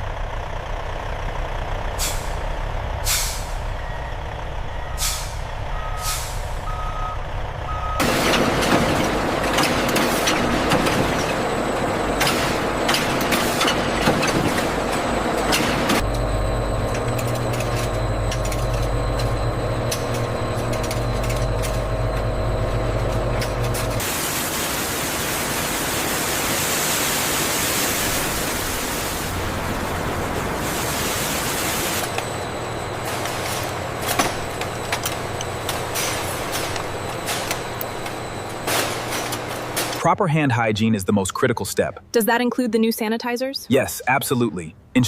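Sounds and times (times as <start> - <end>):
factory machinery hum: 0.0 - 42.5
short beeps: 3.8 - 8.0.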